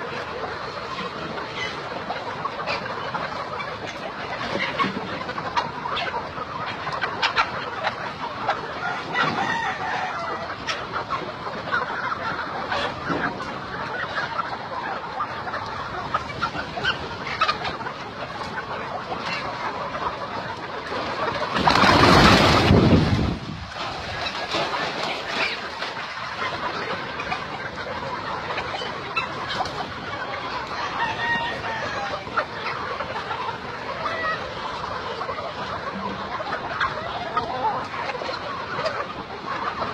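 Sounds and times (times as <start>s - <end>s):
chickens clucking: 0.0s - 39.9s
rooster crowing: 9.2s - 10.3s, 30.9s - 32.2s.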